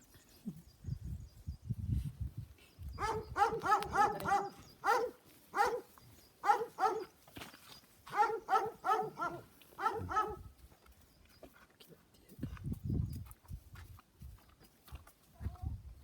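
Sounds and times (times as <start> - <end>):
puppy yapping: 3.0 - 7.1, 8.1 - 10.4.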